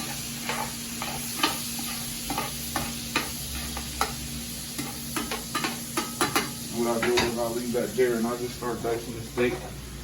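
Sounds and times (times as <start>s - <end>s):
utensil clacking on pan: 0.0s - 4.2s, 4.8s - 7.4s
shrimp sizzling in oil: 0.0s - 10.0s.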